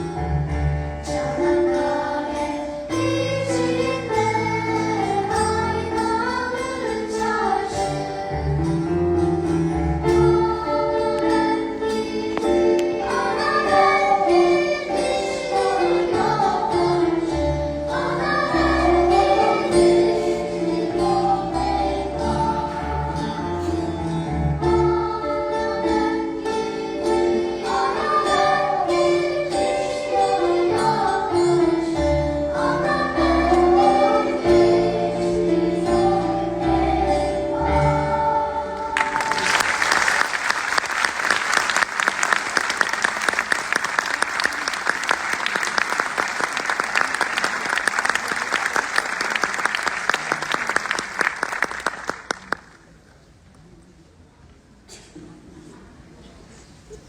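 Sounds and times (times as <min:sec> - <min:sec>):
instrumental accompaniment: 0:00.0 - 0:40.3
children's choir singing: 0:00.0 - 0:52.2
audience applause: 0:39.0 - 0:52.8.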